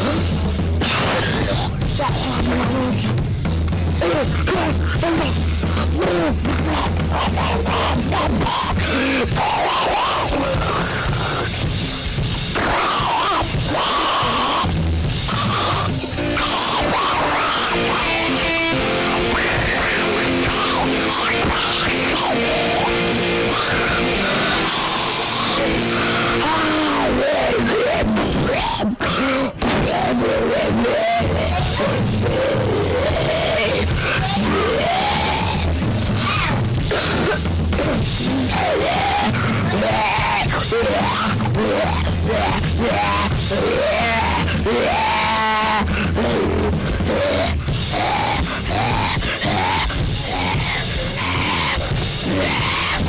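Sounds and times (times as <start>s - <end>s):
live heavy rock music: 0.0s - 53.0s
wailing high sliding notes: 15.7s - 27.1s.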